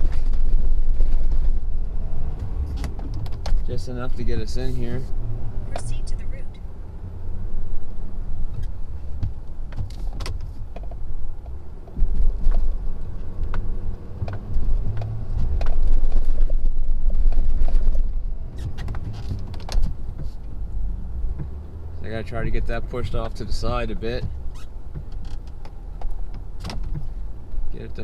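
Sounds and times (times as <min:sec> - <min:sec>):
diesel truck engine rumbling: 0:00.0 - 0:28.0.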